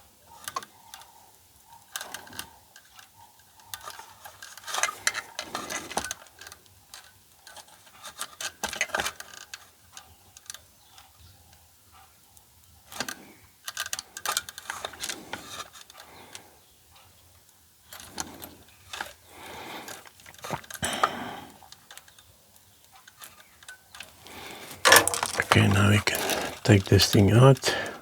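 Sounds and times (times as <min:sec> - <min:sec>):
hand tools clicking and tapping: 0:24.0 - 0:28.0.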